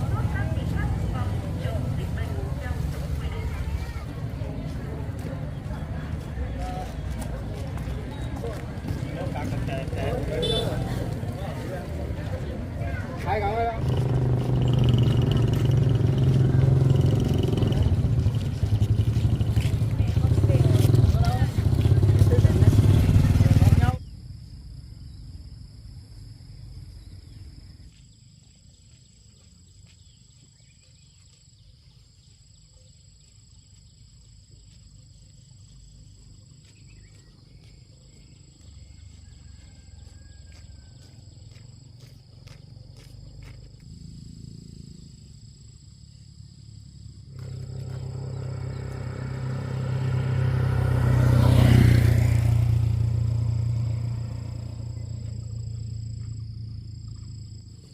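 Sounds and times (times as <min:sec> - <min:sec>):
vehicle engine: 0:00.0 - 0:31.2, 0:33.7 - 0:57.9.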